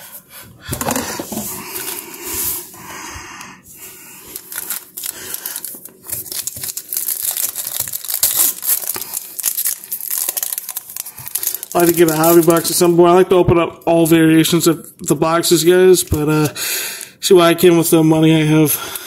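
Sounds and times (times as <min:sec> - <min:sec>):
foil wrappers tearing: 0:04.2 - 0:12.8
foil crinkling: 0:04.2 - 0:13.0.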